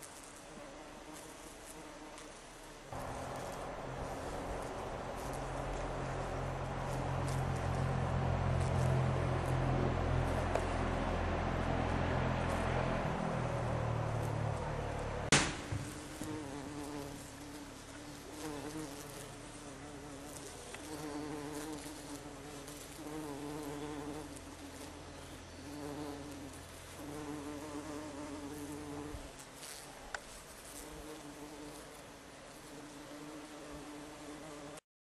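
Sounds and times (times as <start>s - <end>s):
buzzing insect: 0.0s - 9.6s, 15.8s - 34.8s
low hum: 3.0s - 16.3s.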